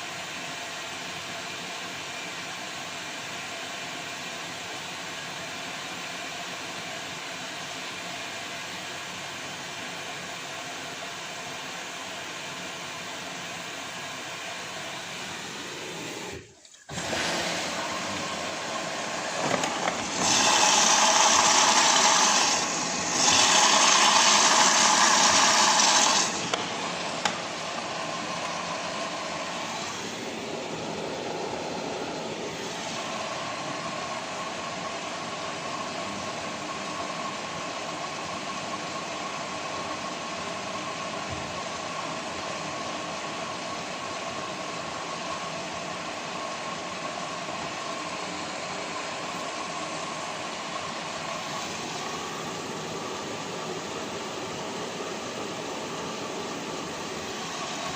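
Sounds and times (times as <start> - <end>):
washing machine running: 0.0 - 57.9
water rushing into washing machine: 14.8 - 36.3, 48.0 - 57.9.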